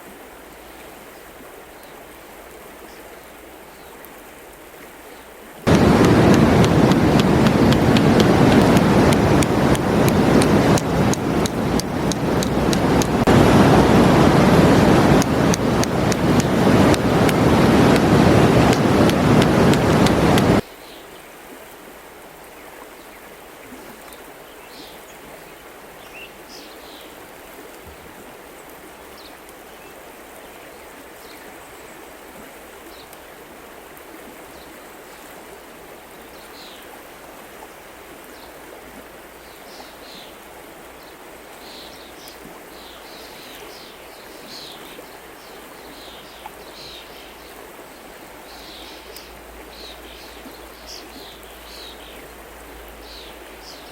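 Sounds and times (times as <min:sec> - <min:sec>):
river water rushing: 0:05.7 - 0:20.6
small birds chirping: 0:05.7 - 0:20.6.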